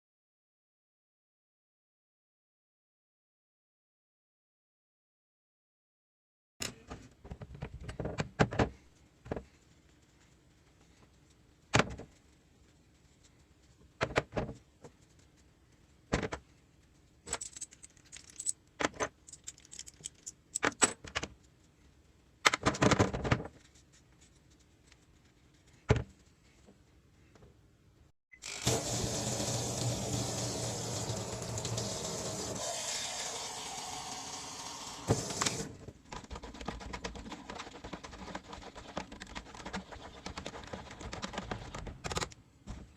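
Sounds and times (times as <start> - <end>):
metal parts and tools clinking: 17.2 - 21.1.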